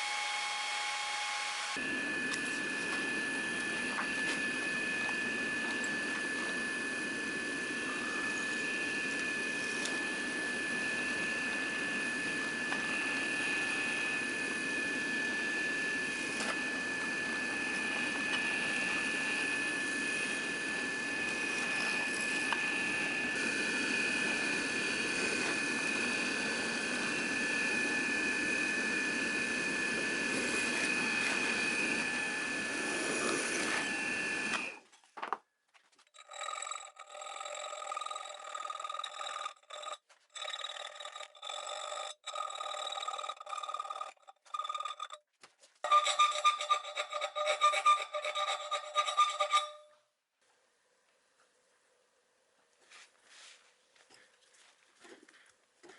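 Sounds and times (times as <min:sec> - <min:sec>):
power tool high-pitched whine: 0:00.0 - 0:34.8.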